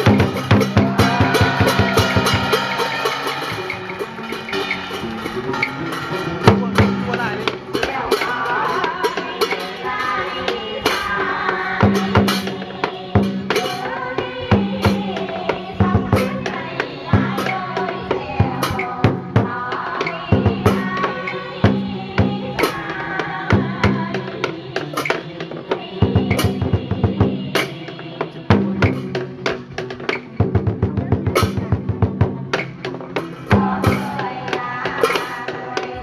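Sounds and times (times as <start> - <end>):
wavering melody: 0.0 - 11.2
drums and percussion: 0.0 - 36.0.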